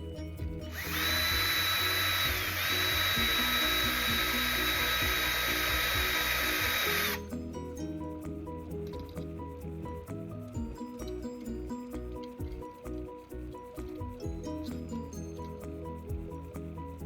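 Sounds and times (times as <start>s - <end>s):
background music: 0.0s - 17.0s
power tool high whine: 0.7s - 7.2s.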